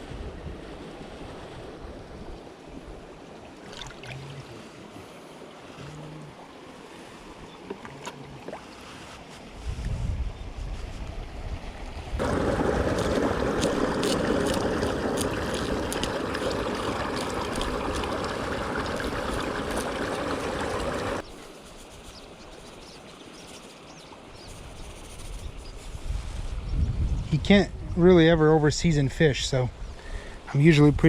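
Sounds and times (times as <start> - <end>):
running water rushing: 0.6 - 9.4, 11.8 - 21.3.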